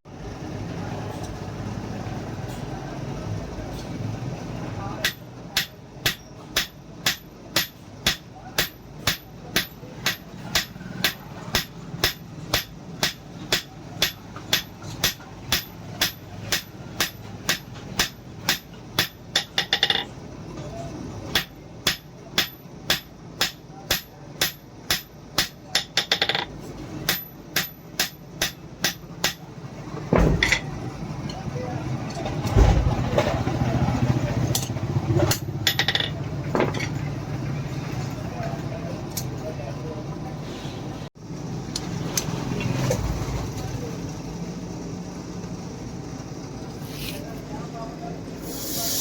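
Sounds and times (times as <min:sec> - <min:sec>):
hammer striking steel on anvil: 0:05.0 - 0:20.1, 0:21.3 - 0:29.5.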